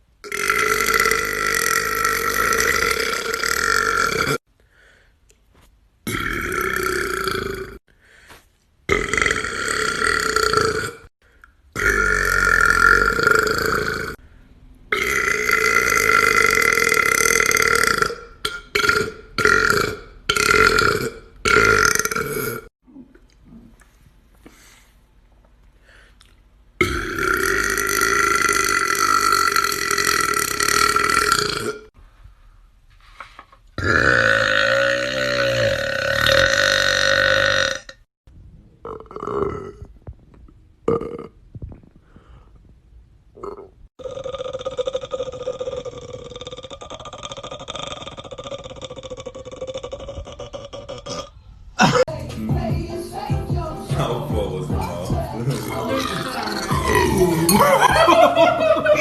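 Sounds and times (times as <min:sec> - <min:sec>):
man burping: 0:00.2 - 0:04.4, 0:06.1 - 0:07.8, 0:08.9 - 0:11.1, 0:11.8 - 0:14.2, 0:14.9 - 0:22.7, 0:26.8 - 0:31.9, 0:33.8 - 0:38.1, 0:38.8 - 0:39.9, 0:40.8 - 0:41.4, 0:43.4 - 0:52.1, 0:54.8 - 0:58.7.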